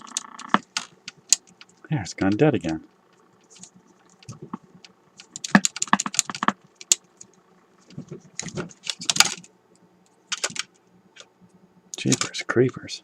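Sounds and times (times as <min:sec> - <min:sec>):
radio clicks and crackles: 0:00.0 - 0:09.5.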